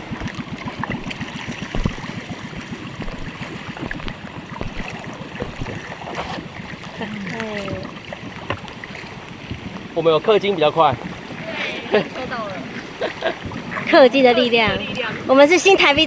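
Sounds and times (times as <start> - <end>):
knocks on boat: 0.0 - 6.4
river water rushing and splashing: 0.0 - 16.0.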